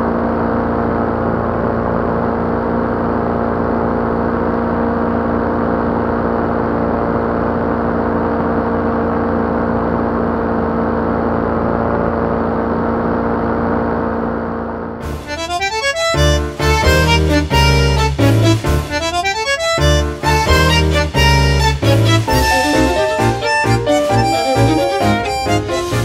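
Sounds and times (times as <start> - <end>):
paramotor engine and propeller: 0.0 - 18.1
accordion music: 15.0 - 26.0.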